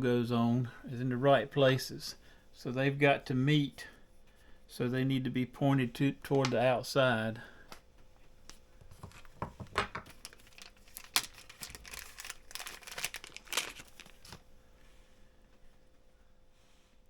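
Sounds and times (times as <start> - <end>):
crinkly scrapes: 10.2 - 14.4.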